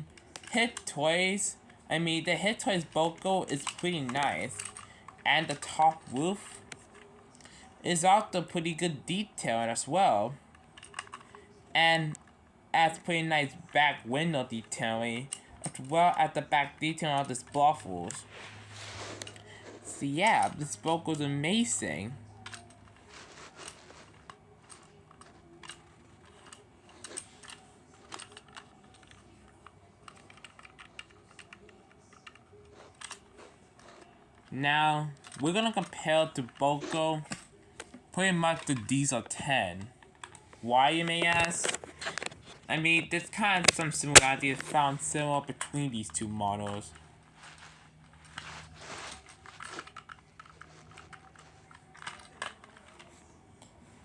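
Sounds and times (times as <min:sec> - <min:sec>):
plastic toy train clicks and taps: 0:00.0 - 0:08.8, 0:20.2 - 0:34.6, 0:35.2 - 0:47.7.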